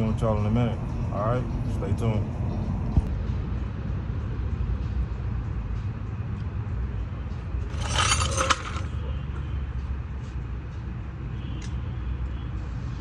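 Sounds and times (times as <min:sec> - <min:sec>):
metal objects clinking: 0:07.6 - 0:09.0.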